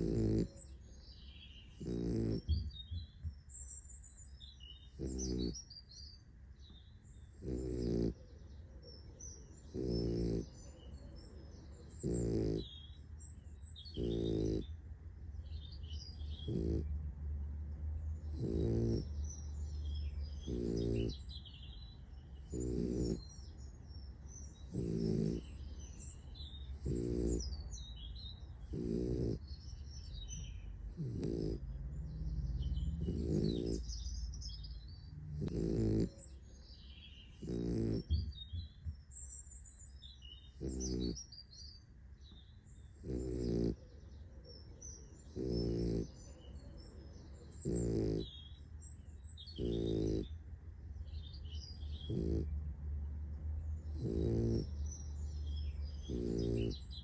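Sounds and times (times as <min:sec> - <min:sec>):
puppy snoring: 0:00.0 - 0:00.9, 0:01.5 - 0:04.2, 0:04.8 - 0:05.7, 0:07.1 - 0:08.2, 0:09.6 - 0:10.7, 0:11.9 - 0:14.8, 0:15.5 - 0:17.0, 0:18.2 - 0:23.7, 0:24.3 - 0:41.4, 0:42.7 - 0:43.8, 0:45.2 - 0:50.5, 0:51.2 - 0:52.7, 0:53.7 - 0:57.0.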